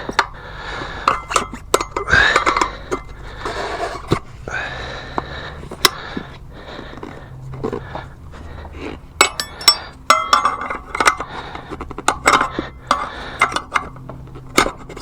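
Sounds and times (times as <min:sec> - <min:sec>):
tire bead scraping onto rim: 0:00.0 - 0:15.0
tire irons clinking on metal rim: 0:00.0 - 0:15.0.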